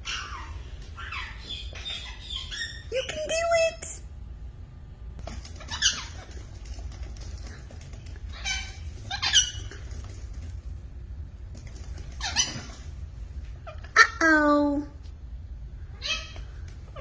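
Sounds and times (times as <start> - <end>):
parrot squeaky calls: 0.0 - 3.2, 5.6 - 6.4, 8.3 - 9.9, 12.1 - 12.8, 16.0 - 16.4
low steady hum: 0.0 - 17.0.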